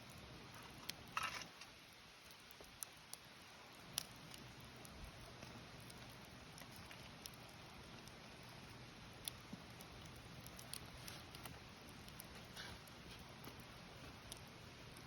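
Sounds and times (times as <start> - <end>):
campfire crackling and popping: 0.0 - 15.0
faint steady hiss: 0.0 - 15.0.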